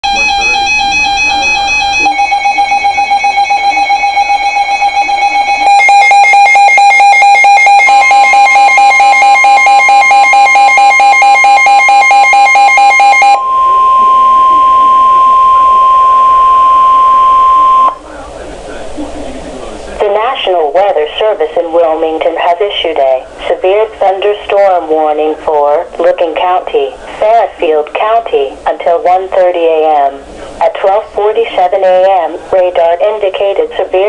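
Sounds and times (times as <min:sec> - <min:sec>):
electronic alarm beeps: 0:00.0 - 0:18.0
steady loud warning tone: 0:00.0 - 0:18.8.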